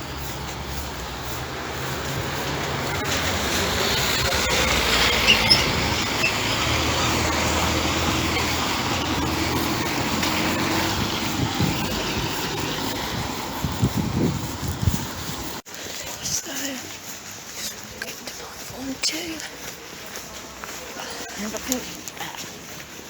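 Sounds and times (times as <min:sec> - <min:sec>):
train running: 0:00.0 - 0:15.0
short high squeaks: 0:04.9 - 0:06.5.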